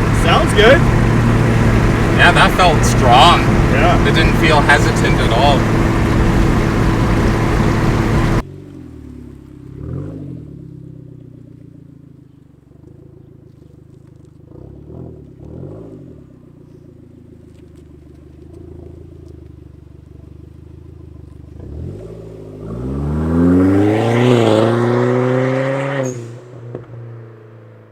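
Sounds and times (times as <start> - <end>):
car engine accelerating: 0.0 - 27.9.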